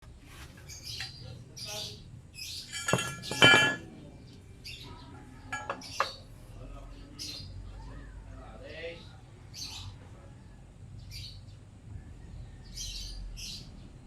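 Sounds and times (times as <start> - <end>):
metal clinking and ringing: 2.7 - 3.9, 5.5 - 6.2.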